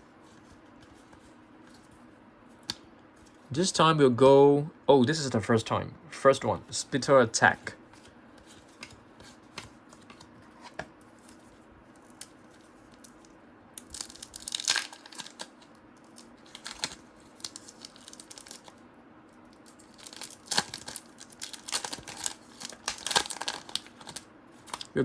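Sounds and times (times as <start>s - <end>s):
wrapper tearing and crinkling: 13.0s - 18.8s, 19.5s - 25.0s.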